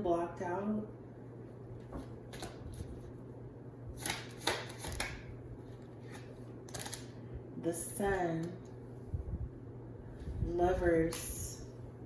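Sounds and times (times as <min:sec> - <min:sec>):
faint low hum: 0:00.0 - 0:12.0
cards being shuffled: 0:04.0 - 0:07.2.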